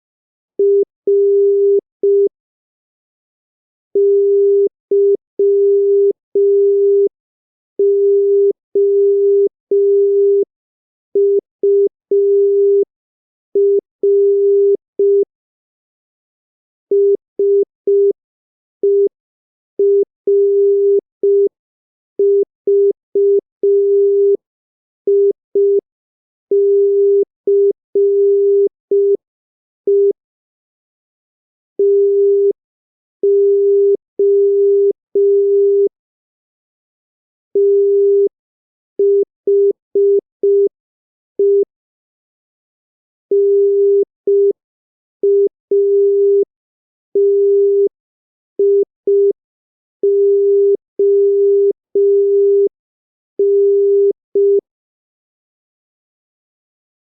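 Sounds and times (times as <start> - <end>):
morse code beeps: 0.6 - 2.3, 4.0 - 7.1, 7.8 - 10.4, 11.2 - 12.8, 13.6 - 15.2, 19.8 - 21.5, 22.2 - 24.4, 26.5 - 29.2, 31.8 - 32.5, 33.2 - 35.9, 37.6 - 38.3, 43.3 - 44.5, 45.2 - 46.4, 47.2 - 47.9, 48.6 - 49.4, 50.0 - 52.7, 53.4 - 54.6.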